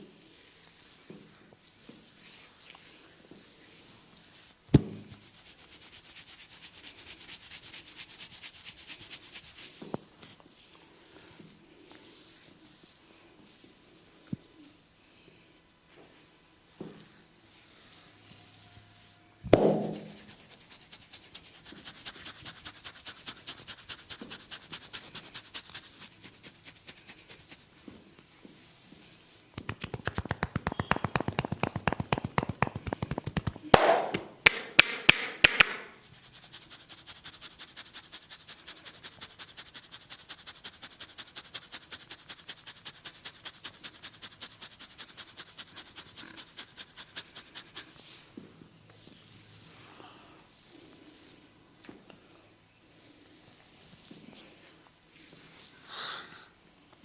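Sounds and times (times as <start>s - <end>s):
dull thump: 4.7s - 5.2s
light tapping on a head: 29.6s - 35.9s
sharp loud smacks: 29.6s - 35.9s.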